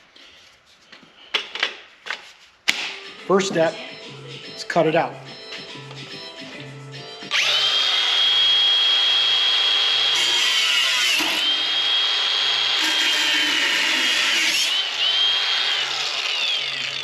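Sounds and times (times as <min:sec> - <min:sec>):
power tool cutting sheet steel: 0:07.3 - 0:17.0.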